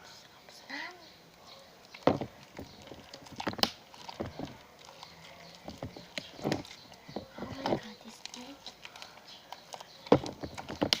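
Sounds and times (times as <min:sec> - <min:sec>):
slime kneaded by hand popping: 0:01.8 - 0:04.6, 0:05.6 - 0:11.0.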